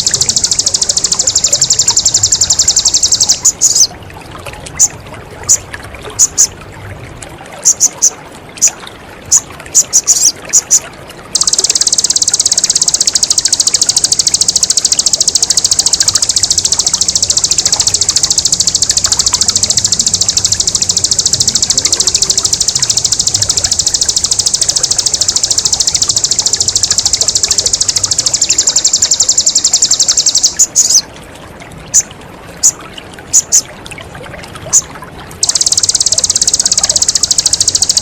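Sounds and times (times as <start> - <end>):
bird fast high trill: 0.0 - 3.9, 7.6 - 10.8, 11.4 - 31.0, 34.8 - 38.0
water trickling: 0.0 - 38.0.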